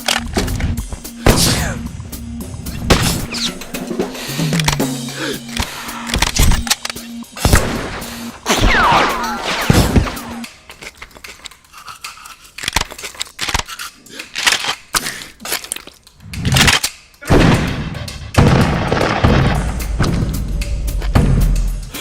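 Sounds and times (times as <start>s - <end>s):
cartoon cracks and impacts: 2.7s - 3.5s, 16.4s - 20.4s.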